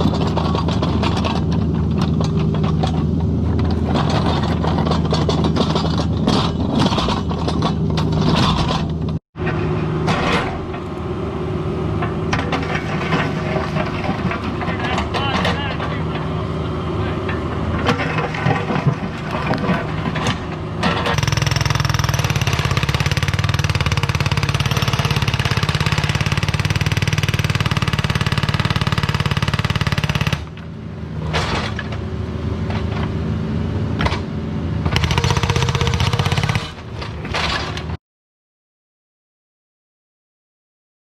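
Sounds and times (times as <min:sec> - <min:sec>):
excavator diesel engine running: 0:08.8 - 0:38.0
hydraulic breaker hammering rock: 0:17.8 - 0:30.7, 0:34.8 - 0:37.8.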